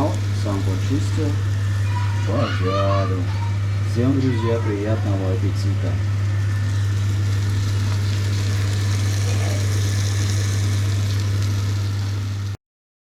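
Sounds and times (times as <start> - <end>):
motor humming: 0.0 - 12.6
even hiss: 6.6 - 12.6.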